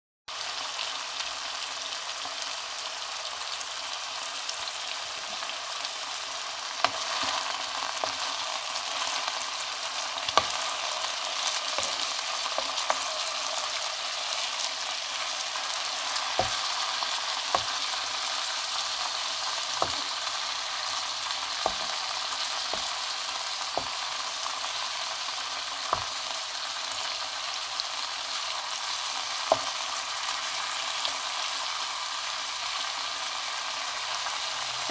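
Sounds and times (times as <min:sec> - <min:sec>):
food sizzling in a pan: 0:00.3 - 0:34.9
utensil knocking against pan: 0:16.4 - 0:16.7, 0:17.6 - 0:17.8, 0:19.8 - 0:20.1, 0:21.7 - 0:22.0.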